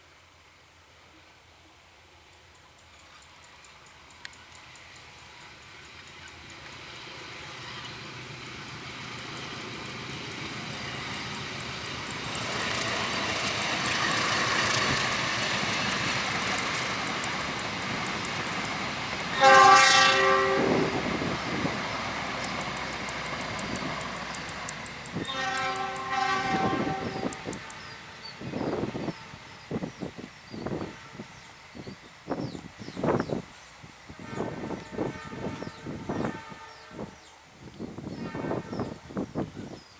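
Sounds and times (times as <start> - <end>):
train rumbling past: 0.0 - 39.9
train horn blast: 19.2 - 22.0, 25.0 - 29.4, 30.5 - 31.5, 34.1 - 37.4, 38.0 - 39.3.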